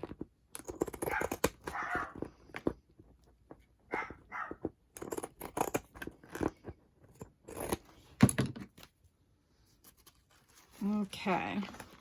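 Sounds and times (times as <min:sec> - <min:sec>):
scissors cutting paper: 0:00.0 - 0:02.8, 0:03.9 - 0:08.0
paper rustling: 0:09.6 - 0:12.0.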